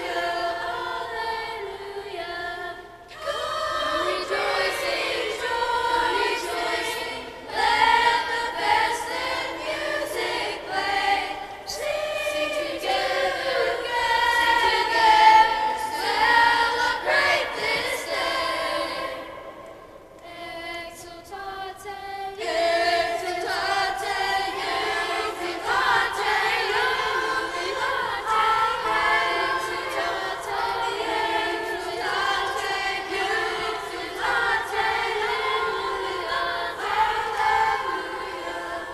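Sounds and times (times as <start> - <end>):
choir singing: 0.0 - 38.9.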